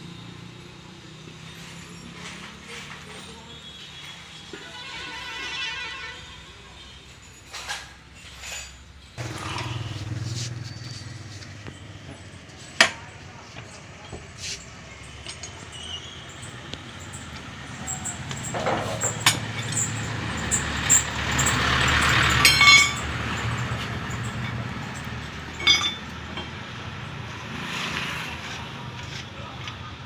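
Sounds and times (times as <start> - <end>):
sharp metallic clinks: 7.1 - 26.6
vehicle engine running: 9.2 - 15.3, 16.4 - 25.7.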